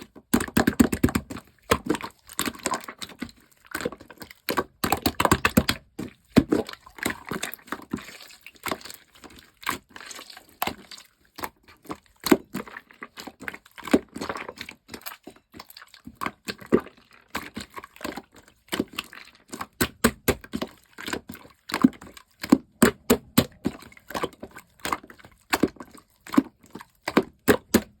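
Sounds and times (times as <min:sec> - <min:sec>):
slime squished by hand: 0:16.0 - 0:28.0.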